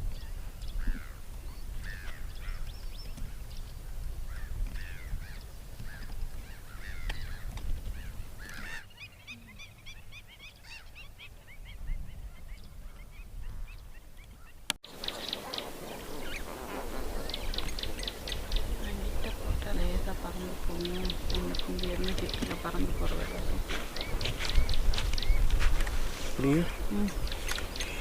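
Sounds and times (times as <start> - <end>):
flamingos honking: 14.9 - 25.0, 26.4 - 28.0.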